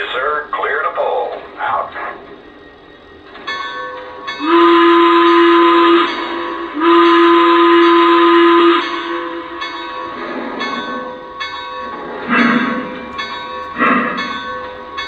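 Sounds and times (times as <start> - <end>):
steam whistle blasts: 0.0 - 15.0.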